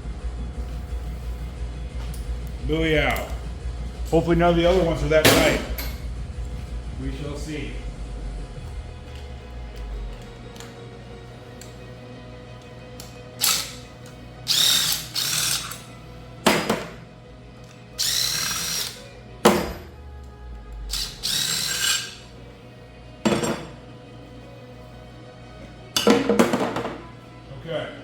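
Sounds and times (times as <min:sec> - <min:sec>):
power tool spinning: 0:13.4 - 0:16.0, 0:18.0 - 0:19.8, 0:20.8 - 0:22.3.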